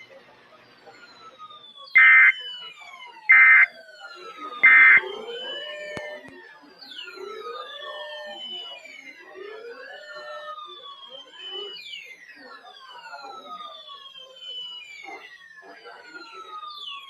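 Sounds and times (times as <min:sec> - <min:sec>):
siren-like whistling tones sweeping: 0:02.0 - 0:02.4, 0:03.3 - 0:03.7, 0:04.6 - 0:05.4.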